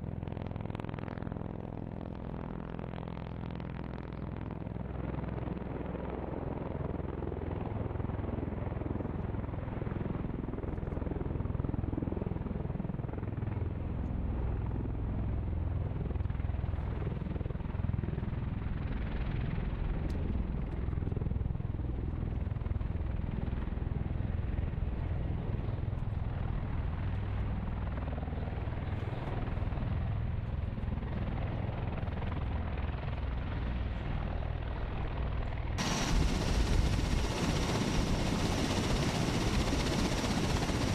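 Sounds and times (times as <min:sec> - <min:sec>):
aircraft rotors droning: 0:00.0 - 0:40.9.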